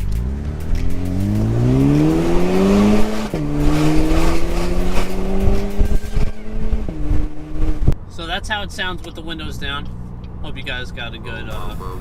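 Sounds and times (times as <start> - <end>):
car engine accelerating hard: 0.0 - 8.0.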